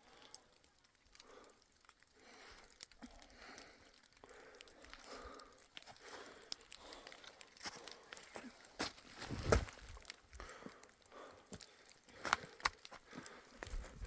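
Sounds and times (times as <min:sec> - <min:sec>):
footsteps crunching through snow: 0:08.4 - 0:10.0.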